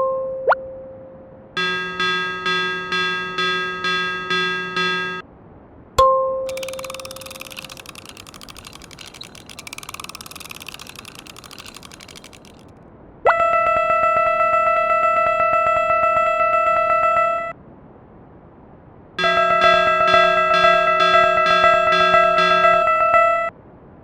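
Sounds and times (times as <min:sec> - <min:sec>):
electronic buzzing tone: 0:01.6 - 0:05.2, 0:06.5 - 0:12.5, 0:19.2 - 0:23.5
crackling rattle: 0:06.5 - 0:12.7.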